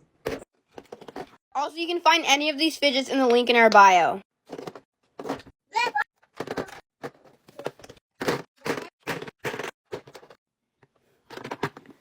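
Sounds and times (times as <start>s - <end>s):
plastic toys clattering: 4.5s - 5.5s, 6.3s - 10.4s, 11.2s - 12.0s.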